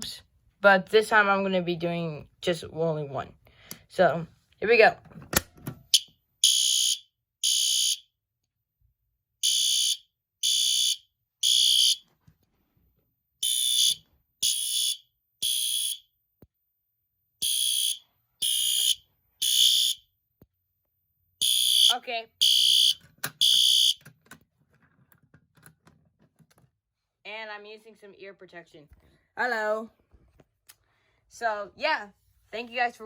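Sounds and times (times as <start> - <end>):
fire alarm horn blasts: 5.9 - 8.1, 9.4 - 12.0, 13.4 - 16.1, 17.4 - 20.0, 21.4 - 24.0.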